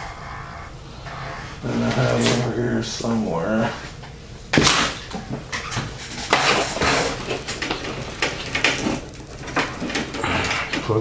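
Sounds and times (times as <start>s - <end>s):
cables and plastic connectors clattering: 5.4s - 11.0s.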